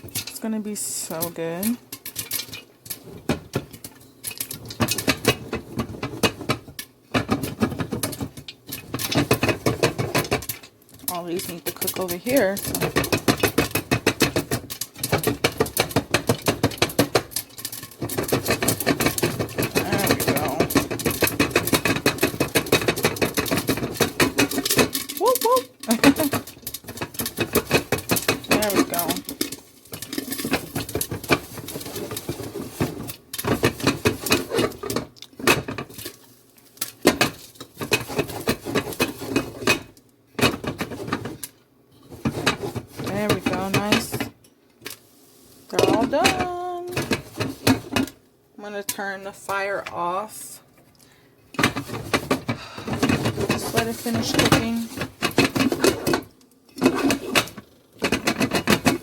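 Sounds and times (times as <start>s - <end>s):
metal pot rattling: 0.0s - 44.5s, 45.7s - 48.2s, 51.6s - 59.0s
popcorn popping: 0.0s - 59.0s.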